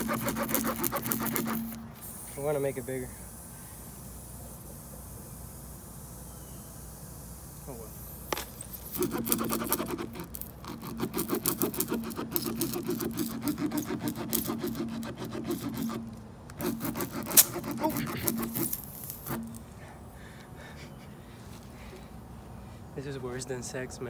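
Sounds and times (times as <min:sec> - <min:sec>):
reamer rasping in tire: 0:00.0 - 0:03.2, 0:07.7 - 0:19.8.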